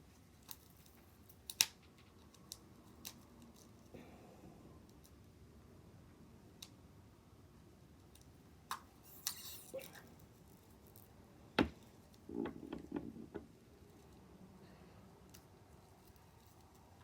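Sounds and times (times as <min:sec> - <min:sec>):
light knocks and rubbing: 0:11.6 - 0:13.5.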